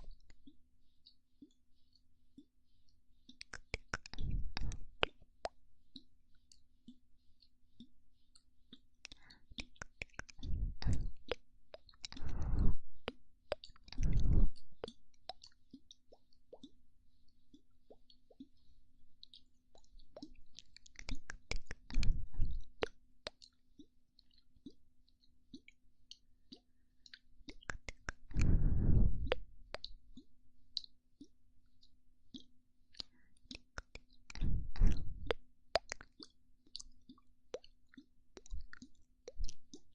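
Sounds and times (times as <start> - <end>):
wet mouth clicks and pops: 3.2 - 7.0, 8.7 - 16.8, 19.2 - 39.9
breathy blows into microphone: 28.4 - 29.4.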